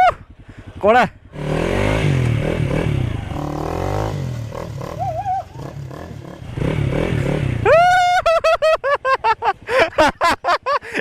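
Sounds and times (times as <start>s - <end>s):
motorcycle engine revving: 0.0s - 8.2s.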